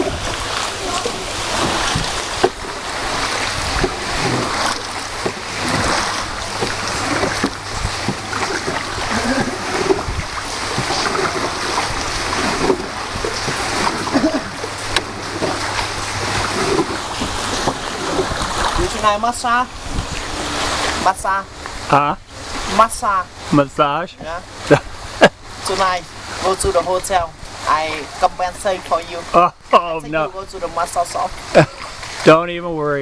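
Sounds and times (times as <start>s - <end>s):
water splashing around boat: 0.0s - 33.0s.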